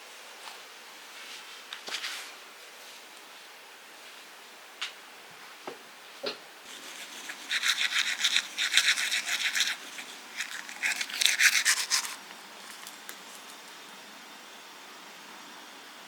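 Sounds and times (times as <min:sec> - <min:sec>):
brushing or scrubbing strokes: 0:06.7 - 0:13.4.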